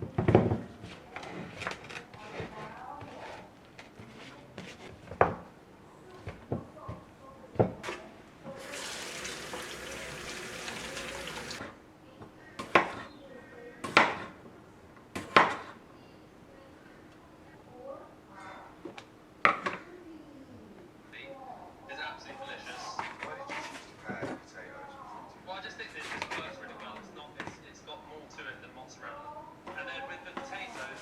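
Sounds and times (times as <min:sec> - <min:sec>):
kitchen tap running: 0:08.5 - 0:11.7.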